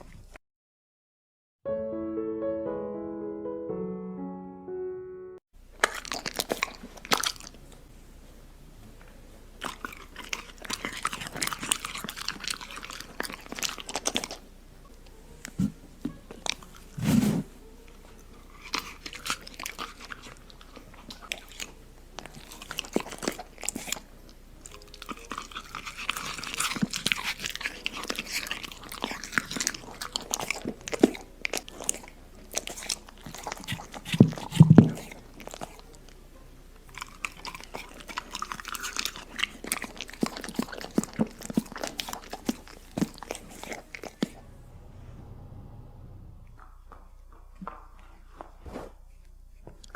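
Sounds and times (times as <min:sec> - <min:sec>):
dog crunching food: 0:05.7 - 0:07.8, 0:09.6 - 0:14.6, 0:15.4 - 0:17.0, 0:18.0 - 0:36.2, 0:36.8 - 0:44.4
low thumps: 0:44.3 - 0:47.1.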